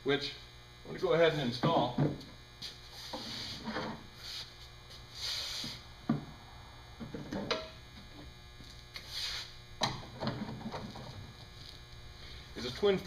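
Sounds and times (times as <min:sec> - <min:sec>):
steady low hum: 0:00.0 - 0:13.0
short scraping hisses: 0:02.9 - 0:03.6, 0:04.2 - 0:05.9, 0:09.0 - 0:09.6.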